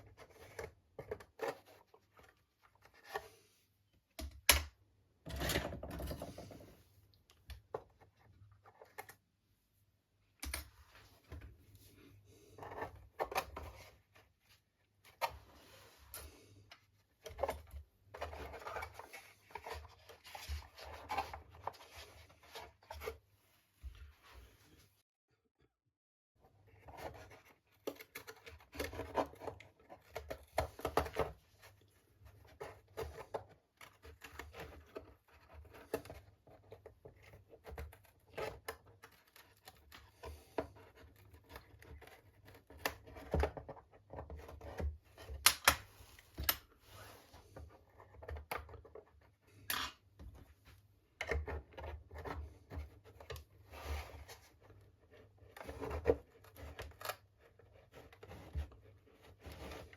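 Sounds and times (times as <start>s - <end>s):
scraping and snipping: 12.4s - 23.2s, 26.7s - 50.5s, 51.2s - 59.9s.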